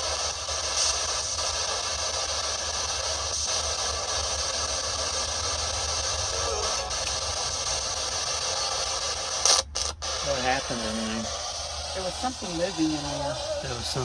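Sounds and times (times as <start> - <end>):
radio static hiss: 0.0 - 14.0.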